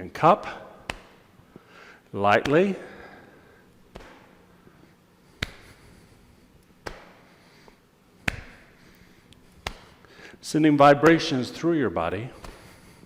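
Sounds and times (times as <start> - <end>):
hands patting the body: 0.8 - 1.3, 2.3 - 3.0, 3.8 - 4.4, 5.2 - 10.2, 12.3 - 13.0.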